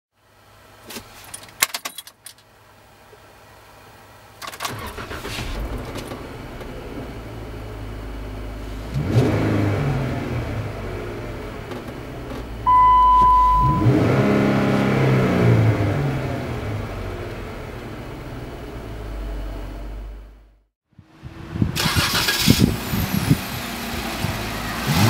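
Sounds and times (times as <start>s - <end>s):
car engine idling and revving: 2.4s - 25.0s
electronic beep: 12.7s - 14.0s.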